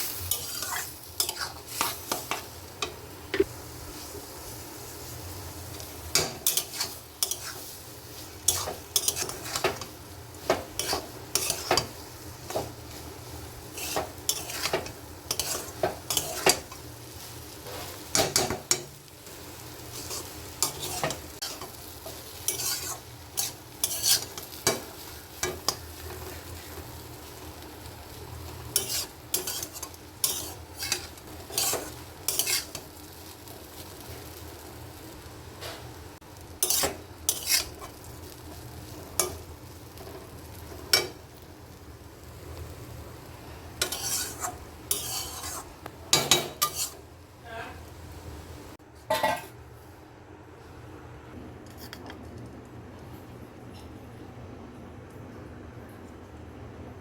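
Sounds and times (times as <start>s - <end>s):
spatula scraping frying pan: 0.0s - 2.6s, 5.8s - 18.9s, 19.8s - 26.9s, 28.5s - 32.9s, 36.6s - 39.4s, 43.7s - 47.1s
faint sizzle: 0.0s - 57.0s.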